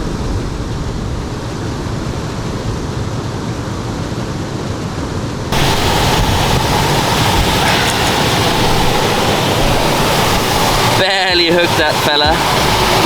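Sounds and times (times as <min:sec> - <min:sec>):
wind rumbling on microphone: 0:00.0 - 0:13.0
flowing water rushing: 0:05.5 - 0:13.0.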